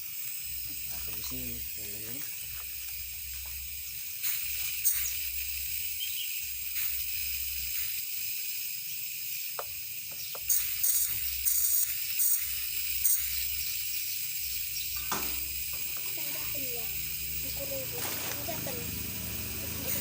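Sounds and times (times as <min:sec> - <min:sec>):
thermal fogger hissing: 0:00.0 - 0:20.0.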